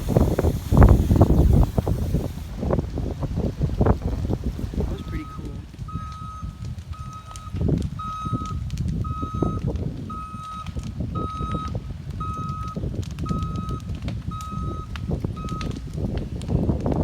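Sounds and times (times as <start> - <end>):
wind rumbling on microphone: 0.0 - 17.0
vehicle reversing beeper: 4.8 - 15.8.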